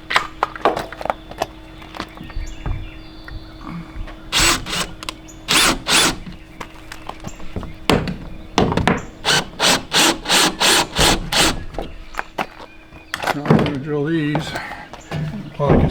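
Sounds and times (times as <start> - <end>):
power drill boring into wood: 4.3 - 6.4, 9.2 - 11.8.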